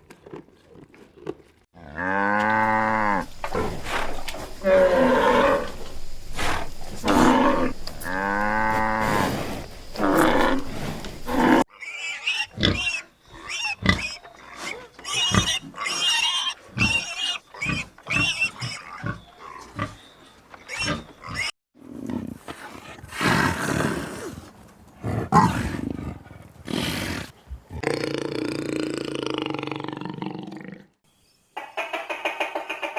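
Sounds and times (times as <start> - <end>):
low noisy animal sounds: 2.1 - 21.5.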